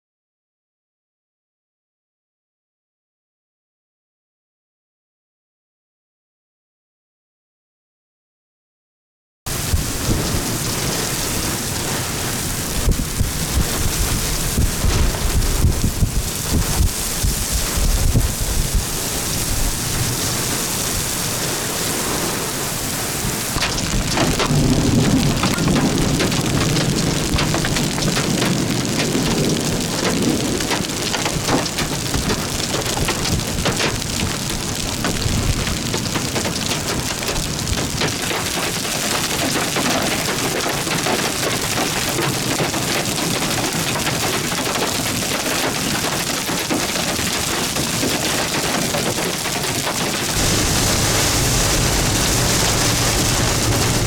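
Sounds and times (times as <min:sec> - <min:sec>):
rolling thunder rumble: 0:09.5 - 0:22.4, 0:23.2 - 0:31.7, 0:50.3 - 0:54.0
heavy rain pelting down: 0:09.5 - 0:54.0.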